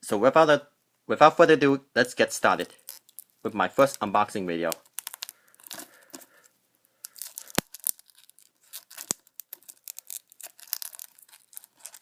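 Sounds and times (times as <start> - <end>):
plastic wrap crinkling: 2.5 - 12.0.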